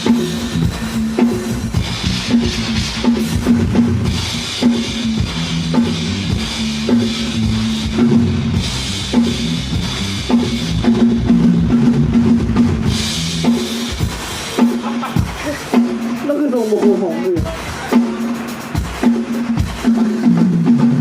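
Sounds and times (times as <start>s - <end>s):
cymbals: 0.0s - 11.3s, 12.8s - 21.0s
low bass notes: 0.0s - 14.2s
drum kit heavy beat: 0.0s - 21.0s.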